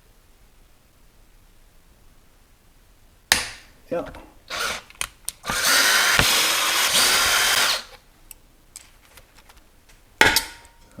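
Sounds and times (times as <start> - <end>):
power drill running: 4.4 - 8.0.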